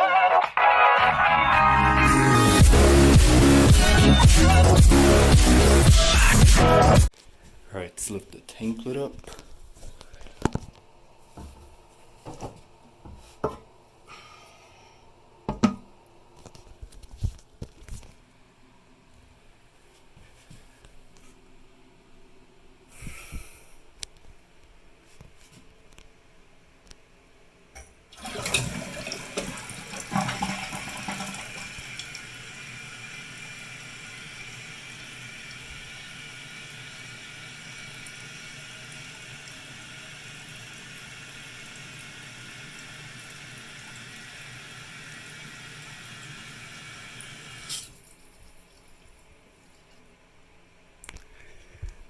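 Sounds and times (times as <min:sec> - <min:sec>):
water rushing from toilet tank: 0:28.1 - 0:47.9
fill valve hissing: 0:28.1 - 0:48.0.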